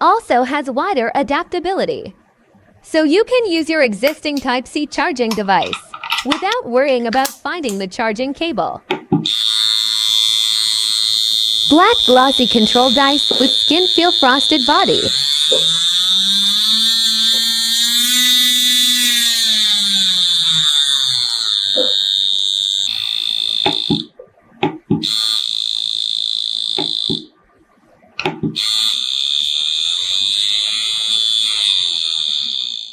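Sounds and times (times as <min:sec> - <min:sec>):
tattoo machine switch clicks: 0:07.2 - 0:07.9, 0:12.0 - 0:20.9, 0:22.9 - 0:25.2, 0:26.7 - 0:27.3
tattoo machine motor whining: 0:08.9 - 0:27.3, 0:28.2 - 0:32.9.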